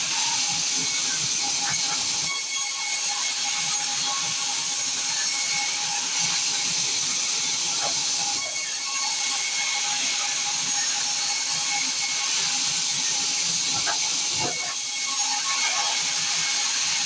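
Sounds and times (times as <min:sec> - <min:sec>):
sawmill saw cutting log: 0:00.0 - 0:17.0.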